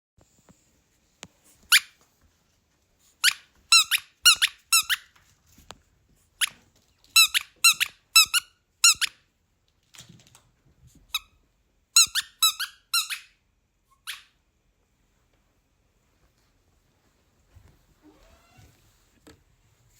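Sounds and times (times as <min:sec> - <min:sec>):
squeaky dog toy squeaking: 0:01.7 - 0:02.0, 0:03.2 - 0:05.1, 0:07.1 - 0:09.2, 0:12.0 - 0:14.4.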